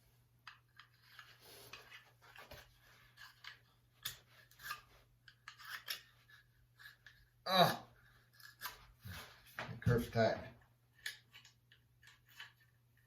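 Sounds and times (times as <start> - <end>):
axe handled clicks and scrapes: 0.4 - 7.3, 8.2 - 9.3, 10.9 - 13.0.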